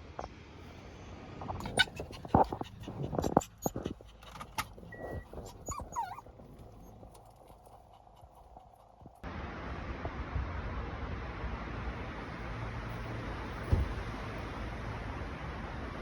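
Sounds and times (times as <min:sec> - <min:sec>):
small animal whimpering: 0:01.6 - 0:09.2.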